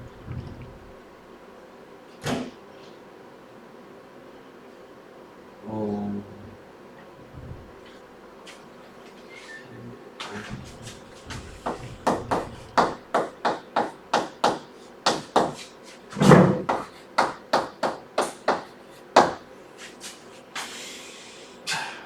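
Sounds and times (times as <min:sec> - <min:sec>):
writing on a board: 0:10.4 - 0:16.0.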